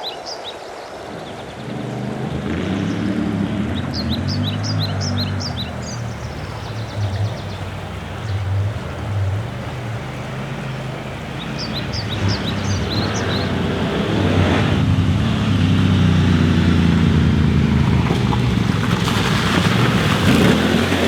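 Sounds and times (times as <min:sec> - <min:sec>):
motorcycle engine running: 0:01.5 - 0:21.0
bird chirping: 0:03.6 - 0:17.4.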